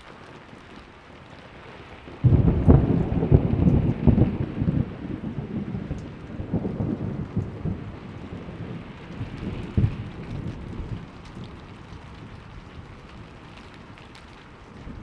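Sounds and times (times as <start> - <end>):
steady rain: 0.0 - 15.0
thunder rumbling: 0.0 - 15.0.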